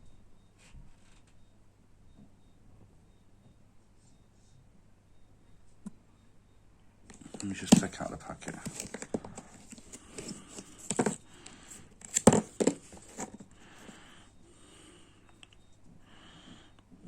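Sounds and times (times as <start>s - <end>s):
plastic packaging crinkling: 7.1s - 13.4s.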